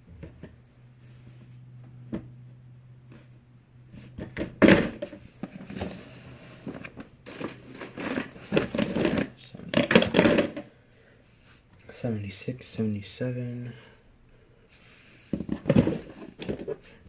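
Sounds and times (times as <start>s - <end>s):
plastic toys clattering and rustling: 6.6s - 10.7s, 15.2s - 17.0s.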